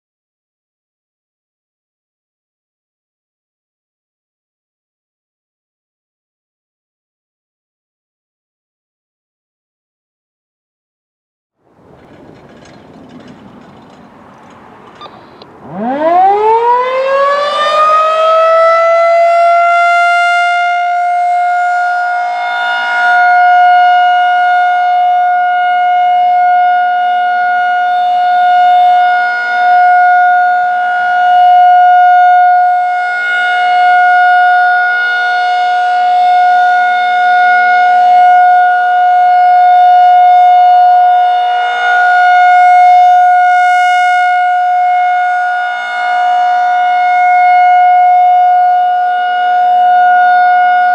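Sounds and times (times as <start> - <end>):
warning siren wailing: 13.2 - 50.9.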